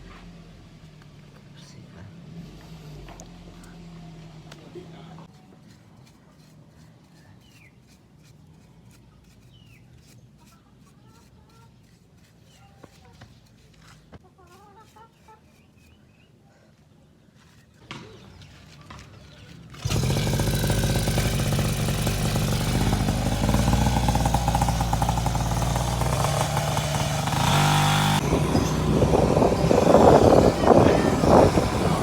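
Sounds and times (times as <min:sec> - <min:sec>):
small two-stroke engine running: 0:19.7 - 0:32.0.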